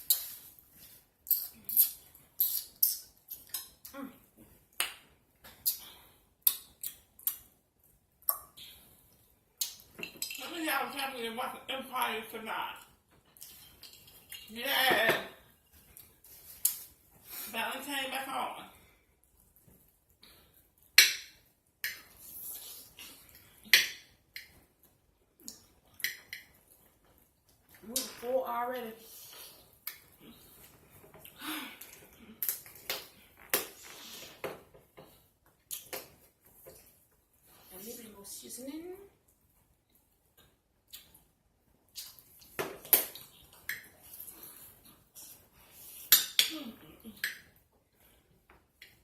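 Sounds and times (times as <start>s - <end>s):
mouth smacks and chewing clicks: 1.2s - 4.0s, 4.7s - 7.6s, 9.6s - 9.9s, 35.6s - 36.2s, 40.3s - 45.4s
chewing and lip smacking: 39.9s - 45.4s.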